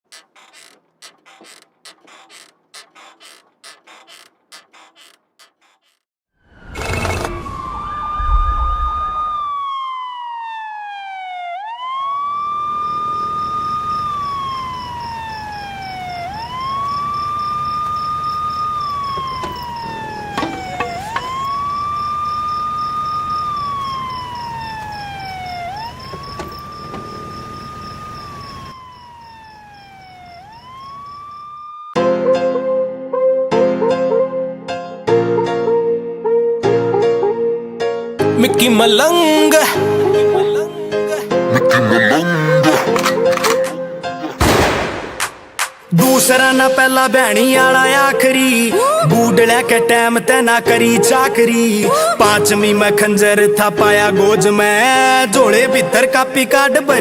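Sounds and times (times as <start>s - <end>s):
rapid ticking: 0.0s - 6.1s
siren wailing: 6.5s - 32.0s, 41.4s - 44.4s.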